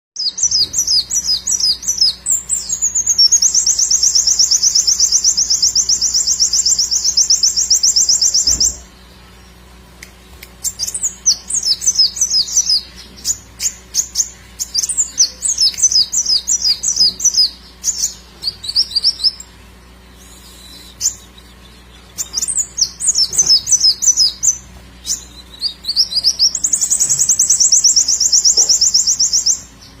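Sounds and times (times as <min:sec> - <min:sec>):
songbird singing fast trills: 0:00.2 - 0:09.6, 0:10.2 - 0:30.0.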